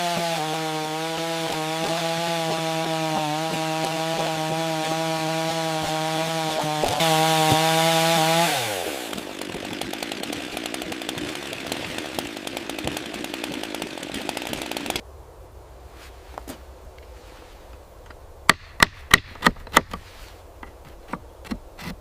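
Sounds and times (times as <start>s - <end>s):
rasping and scraping on wood: 19.4s - 22.0s.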